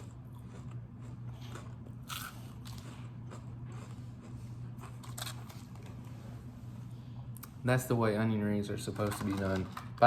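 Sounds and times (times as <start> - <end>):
crunchy chewing: 0.0 - 6.0
steady low hum: 0.0 - 10.0.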